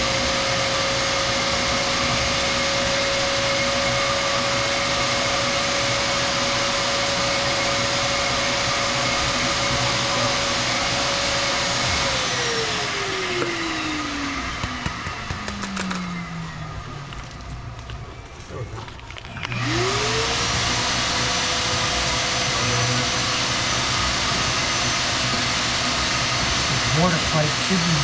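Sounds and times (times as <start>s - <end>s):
electric motor whining: 0.0s - 28.0s.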